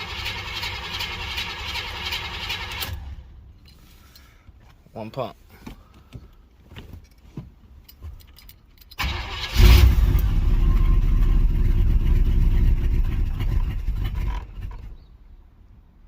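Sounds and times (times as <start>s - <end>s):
engine starter cranking: 0.0s - 3.2s, 9.0s - 15.0s
car engine running: 9.5s - 15.1s.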